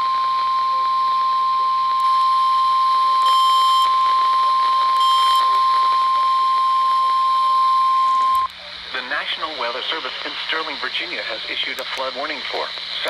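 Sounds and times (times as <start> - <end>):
steady hiss: 8.5 - 13.0.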